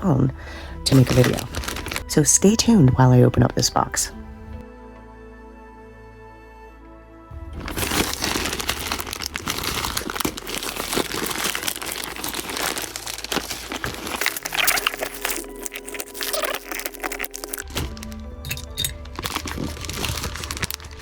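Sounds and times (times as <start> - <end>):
packaging crinkling and tearing: 0.9 - 2.2, 7.5 - 21.0.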